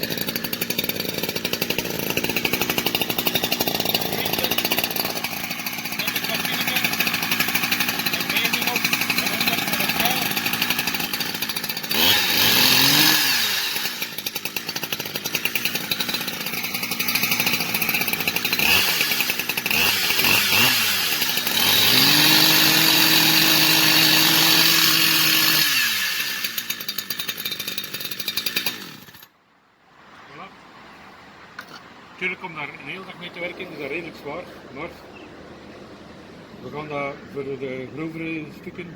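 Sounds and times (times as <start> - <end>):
chainsaw engine revving and idling: 0.0 - 29.3.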